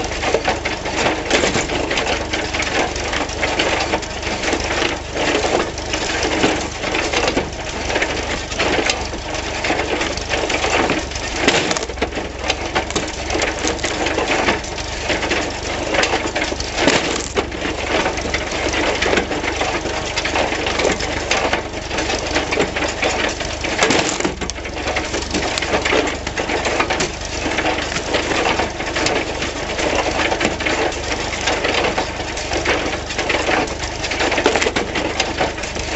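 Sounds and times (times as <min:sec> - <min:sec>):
machine drive humming: 0:00.0 - 0:35.9
wood cracking and crushing: 0:00.0 - 0:35.9.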